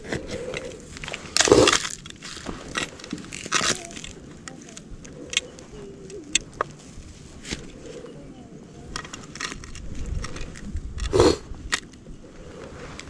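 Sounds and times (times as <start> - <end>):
snow and ice crunching: 0.0 - 5.8.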